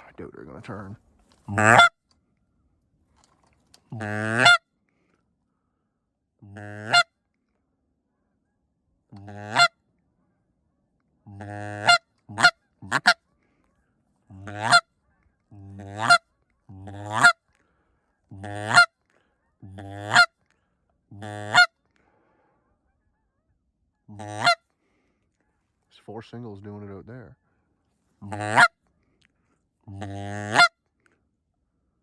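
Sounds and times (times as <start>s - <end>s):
goose call double cluck: 1.5s - 2.0s, 3.9s - 4.6s, 6.4s - 7.1s, 9.1s - 9.8s, 11.3s - 13.3s, 14.3s - 14.9s, 15.5s - 17.4s, 18.3s - 19.0s, 19.6s - 20.4s, 21.1s - 21.8s, 24.1s - 24.6s, 28.2s - 28.8s, 29.9s - 30.8s
goose call honks: 1.5s - 2.0s, 3.9s - 4.6s, 6.4s - 7.1s, 9.1s - 9.8s, 11.3s - 13.3s, 14.3s - 14.9s, 15.5s - 17.4s, 18.3s - 18.9s, 19.6s - 20.4s, 21.1s - 21.8s, 24.1s - 24.6s, 28.2s - 28.8s, 29.9s - 30.8s.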